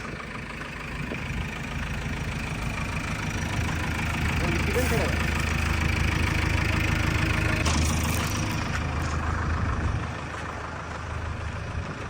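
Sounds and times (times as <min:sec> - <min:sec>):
diesel engine droning: 0:00.0 - 0:12.0.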